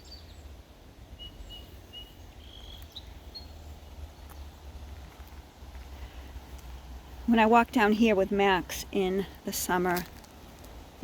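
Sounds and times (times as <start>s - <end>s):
birds whistling: 1.2s - 3.6s.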